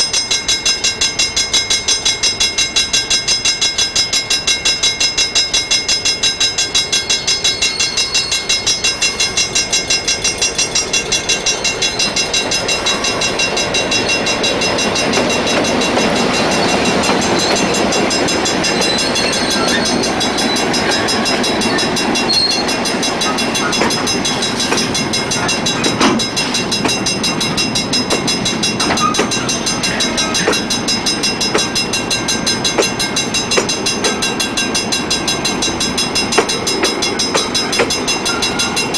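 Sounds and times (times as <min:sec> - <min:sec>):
train rolling on rails: 0:00.0 - 0:38.9
sharp metal clanks: 0:23.2 - 0:34.9.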